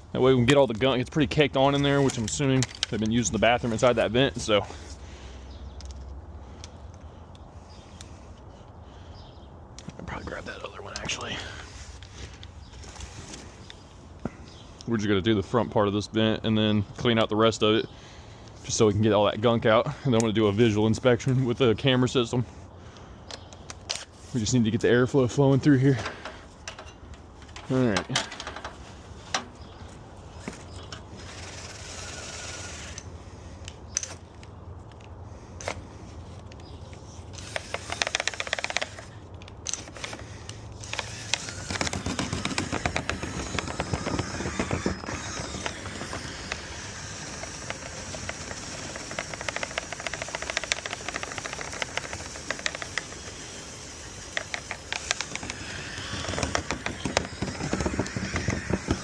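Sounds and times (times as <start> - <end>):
wire brush scraping inside duct: 40.9 - 59.0.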